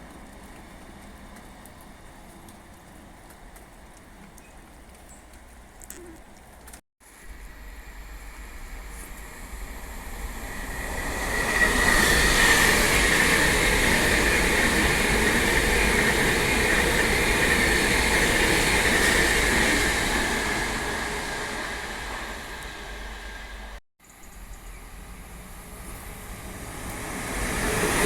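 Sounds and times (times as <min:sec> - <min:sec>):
train passing: 0:07.0 - 0:28.0.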